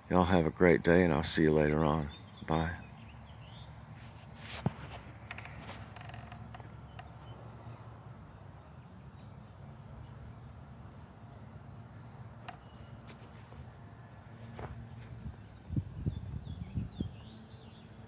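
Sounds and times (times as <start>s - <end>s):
steady low rumble: 14.7s - 17.3s.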